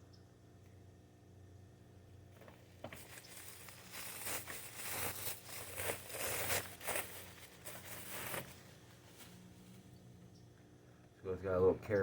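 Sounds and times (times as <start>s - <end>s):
packaging crinkling and tearing: 2.8s - 8.7s.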